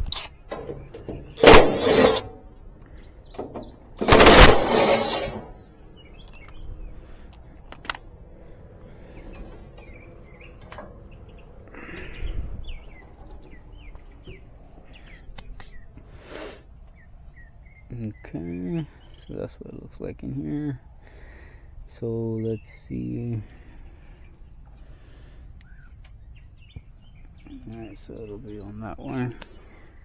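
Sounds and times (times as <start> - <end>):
small birds chirping: 0.0 - 30.0
loud rustling: 0.6 - 2.4, 3.4 - 5.7
clicks and knocks: 3.3 - 5.5.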